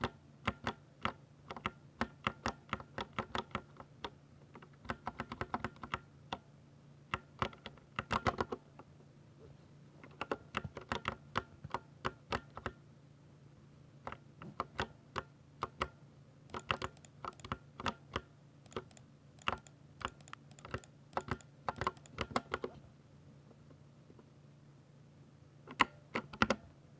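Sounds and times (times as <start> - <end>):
mechanical keyboard typing: 0.0 - 6.1, 7.1 - 8.6, 10.1 - 12.8, 14.1 - 22.8, 25.7 - 26.6
faint low hum: 0.0 - 26.9.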